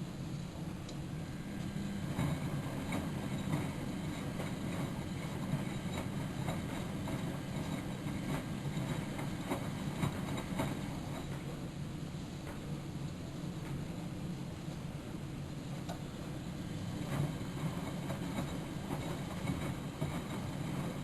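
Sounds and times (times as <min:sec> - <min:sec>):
washing machine motor hum: 0:00.1 - 0:21.0.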